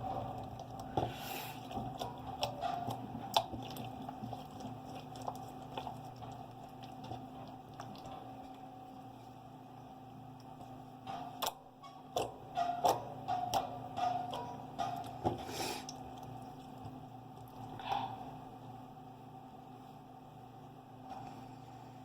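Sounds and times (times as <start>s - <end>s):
slime squishing by hand: 0.0s - 9.4s.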